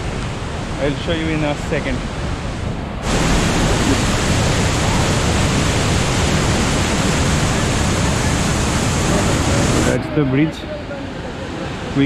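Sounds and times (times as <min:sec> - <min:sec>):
waterfall roaring: 0:03.0 - 0:10.1.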